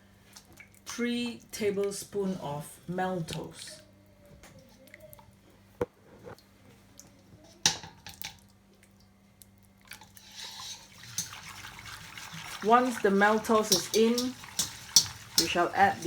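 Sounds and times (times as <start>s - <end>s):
spoon tapping: 13.3s - 16.0s.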